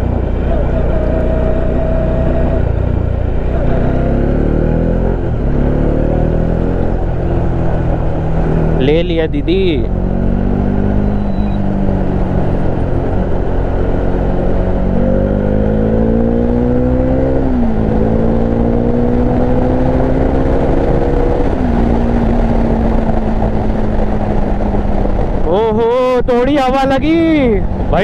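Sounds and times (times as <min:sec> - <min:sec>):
motorcycle engine revving: 0:00.0 - 0:26.1.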